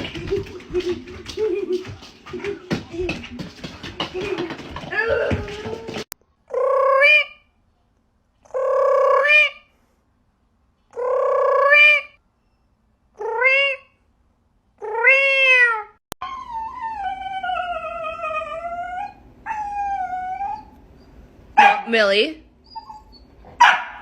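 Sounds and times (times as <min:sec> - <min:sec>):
cat meowing loudly: 0:14.8 - 0:16.0.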